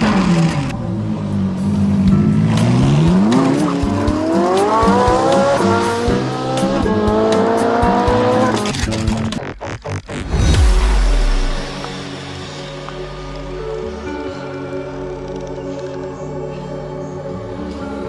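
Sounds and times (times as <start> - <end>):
background music: 0.0 - 18.0
race car engine revving: 1.6 - 12.6.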